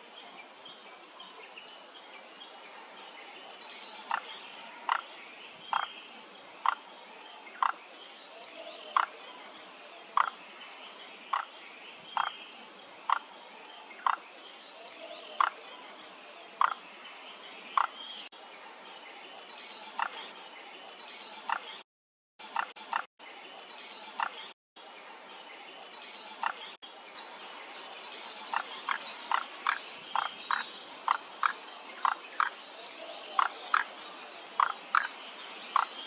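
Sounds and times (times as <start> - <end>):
frog croaking: 10.2 - 10.4, 16.6 - 16.8, 28.5 - 32.5, 33.2 - 34.0, 34.6 - 36.0.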